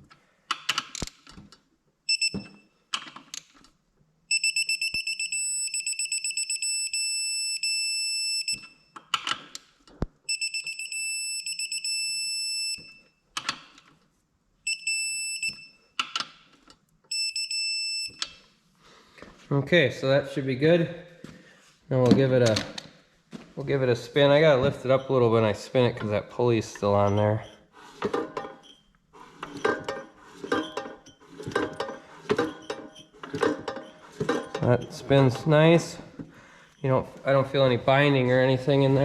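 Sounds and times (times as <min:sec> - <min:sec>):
torque wrench beeping: 0:04.3 - 0:08.9, 0:10.3 - 0:13.0.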